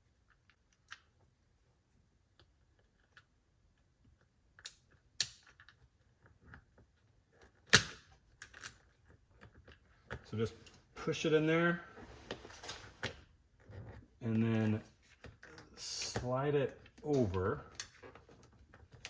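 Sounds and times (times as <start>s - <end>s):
small clicks of plastic and metal parts: 0.2s - 1.3s, 2.3s - 10.8s, 14.5s - 19.0s.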